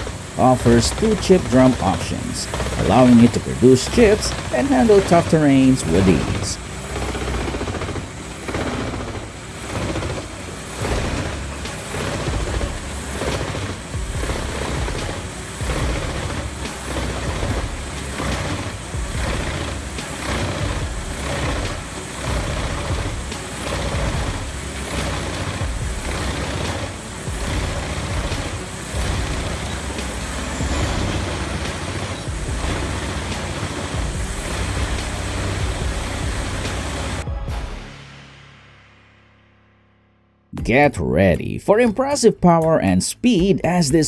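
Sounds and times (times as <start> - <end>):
wood chipper engine under load: 0.0 - 37.3
knocks: 9.8 - 37.9.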